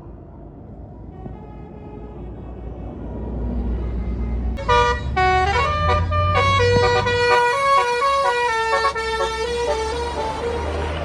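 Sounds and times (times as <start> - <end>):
bus engine rumble: 0.0 - 11.0
bus horn playing melody: 4.6 - 10.8.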